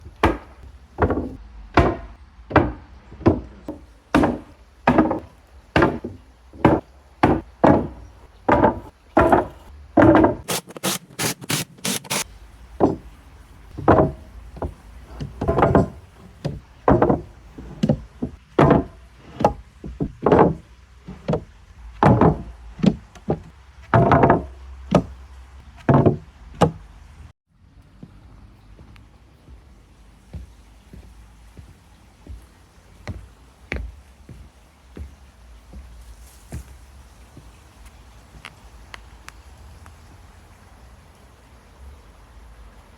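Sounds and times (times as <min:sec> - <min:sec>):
hammer knocks on wood: 0:00.2 - 0:10.5.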